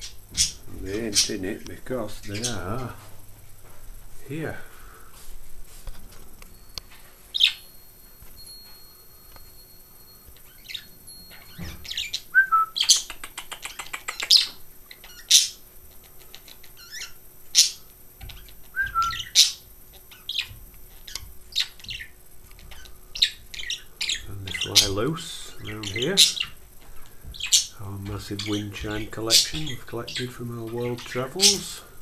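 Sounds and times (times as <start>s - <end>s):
budgerigars chirping and chattering: 0.0s - 3.1s, 7.3s - 7.6s, 10.4s - 32.0s.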